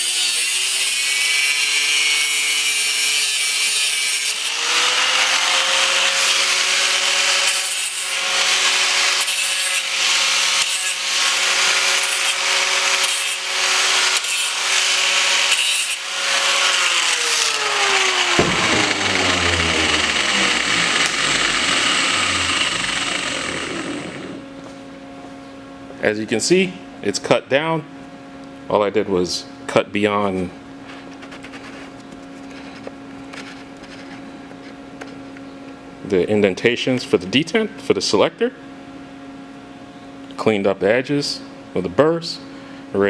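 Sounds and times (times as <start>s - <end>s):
saw cutting metal: 0.0s - 24.5s
electric saw motor whine: 4.4s - 24.5s.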